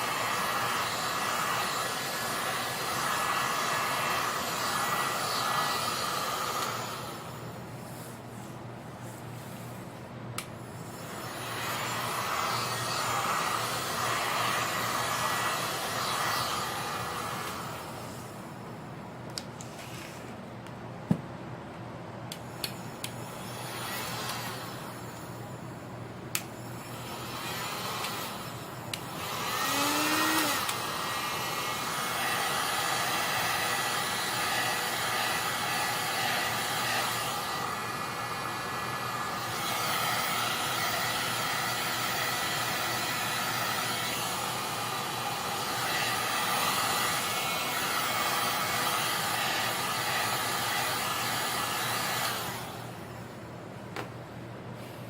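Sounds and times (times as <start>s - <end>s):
air blower motor whining: 0.0s - 21.2s, 22.3s - 55.0s.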